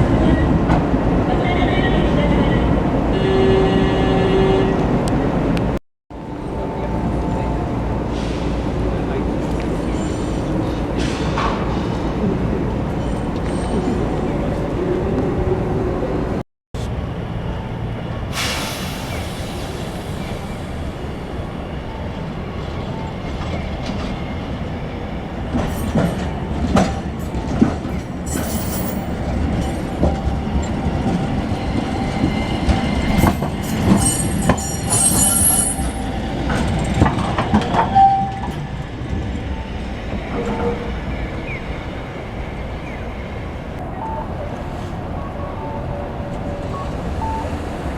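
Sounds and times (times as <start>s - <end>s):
tram rumbling: 0.0s - 47.9s
wheels clacking over rail joints: 25.4s - 39.3s.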